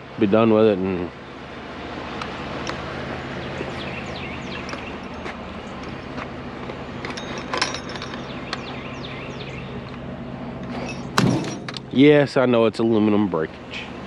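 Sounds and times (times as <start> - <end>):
vehicle engine idling: 0.0 - 14.0
clicks and knocks: 11.0 - 11.9.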